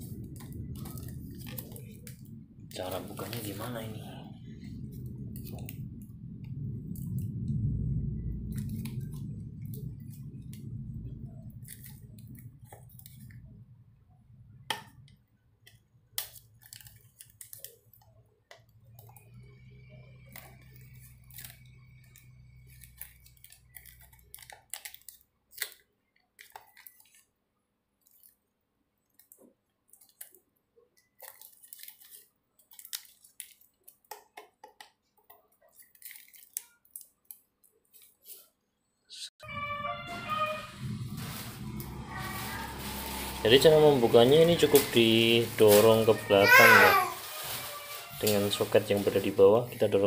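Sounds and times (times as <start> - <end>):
low handling rumble: 0.0 - 14.7, 39.4 - 47.2.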